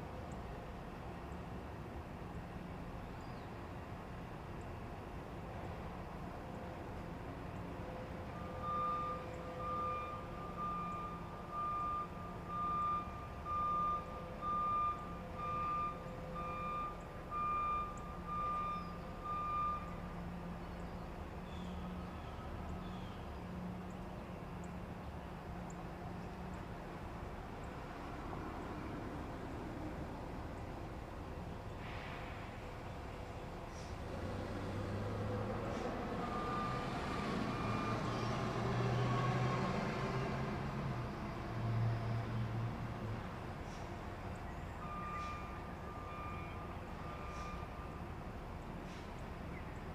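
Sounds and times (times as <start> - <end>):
truck reversing alarm beeping: 7.4 - 21.1, 29.9 - 42.4, 43.8 - 49.6.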